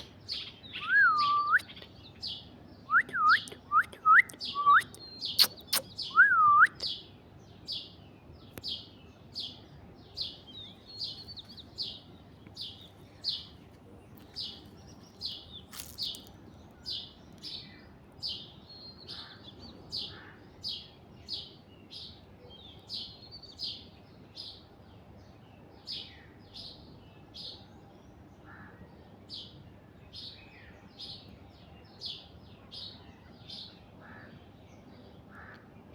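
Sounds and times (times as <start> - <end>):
bird chirping: 0.0 - 28.2.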